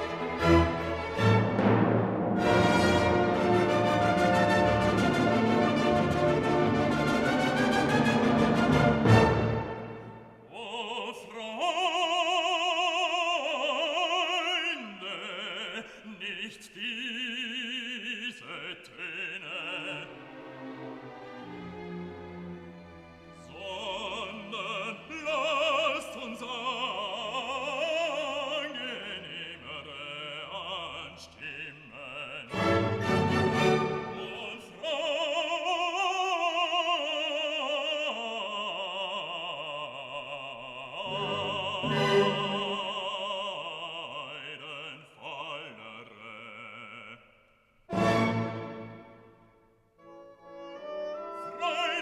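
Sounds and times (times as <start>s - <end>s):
classical orchestral music: 0.0s - 10.5s, 19.3s - 31.0s, 32.4s - 38.1s, 41.0s - 43.8s, 47.9s - 52.0s
operatic singing voice: 2.4s - 21.7s, 23.3s - 49.4s, 50.0s - 52.0s.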